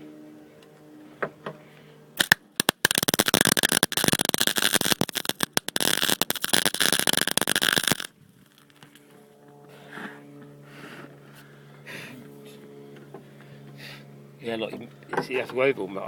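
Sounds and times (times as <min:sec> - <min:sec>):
welding arc crackling: 0:02.2 - 0:08.9.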